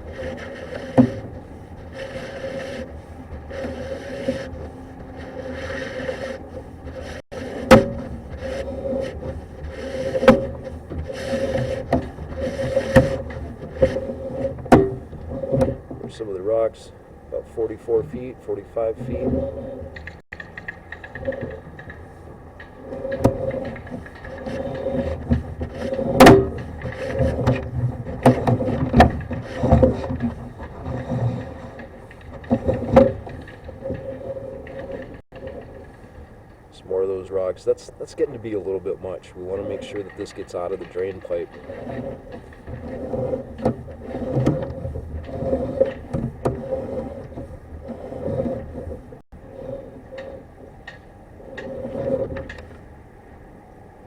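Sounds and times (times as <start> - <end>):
sharp clicks and knocks: 0.0 - 16.8, 17.7 - 36.7, 38.1 - 49.3, 50.0 - 52.9
cable scraping in drain: 0.0 - 52.9.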